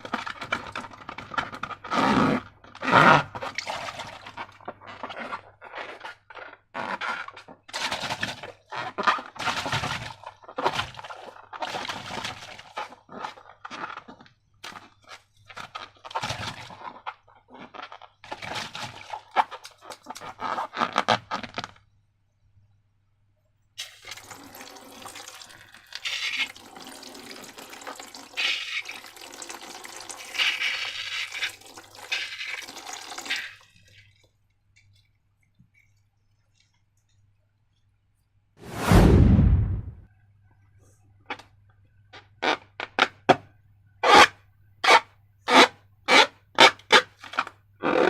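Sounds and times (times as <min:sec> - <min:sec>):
wet slime gushing: 0:26.0 - 0:27.0, 0:28.3 - 0:34.2.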